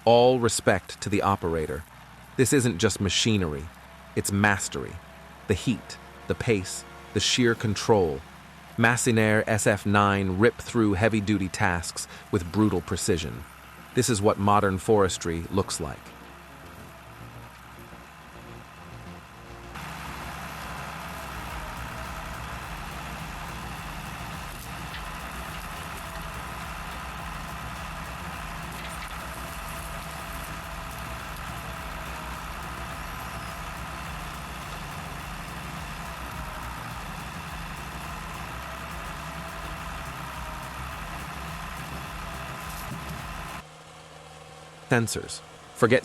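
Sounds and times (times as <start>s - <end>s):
diesel engine running: 0.0s - 46.0s
mechanical whine: 0.0s - 46.0s.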